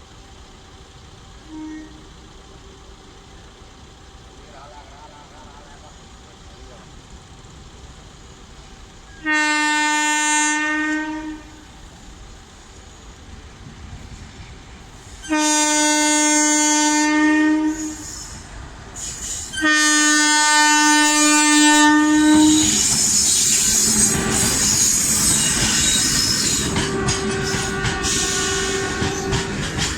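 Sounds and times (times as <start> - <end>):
train running noise: 0.0 - 29.9
locomotive horn blasts: 1.4 - 2.2, 9.1 - 11.7, 15.2 - 18.3, 19.5 - 22.8, 26.6 - 29.4.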